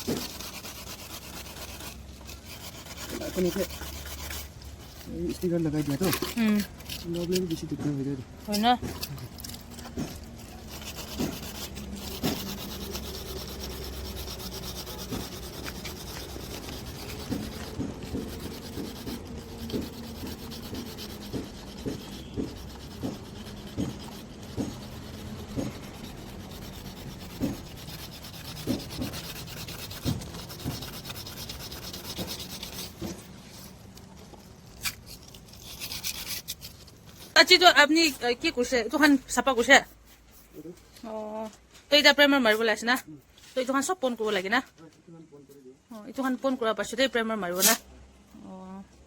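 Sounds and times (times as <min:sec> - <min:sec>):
sanding body putty: 0:00.0 - 0:40.8.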